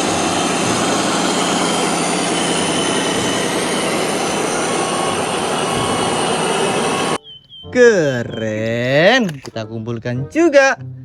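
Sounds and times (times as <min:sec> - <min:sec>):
water spray washing mud: 0:00.0 - 0:07.2.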